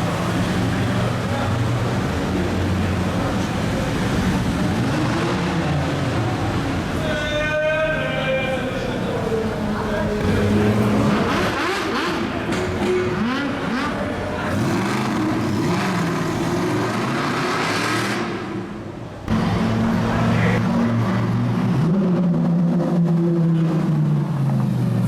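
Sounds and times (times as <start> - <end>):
car engines revving in a tunnel: 0.0 - 25.0.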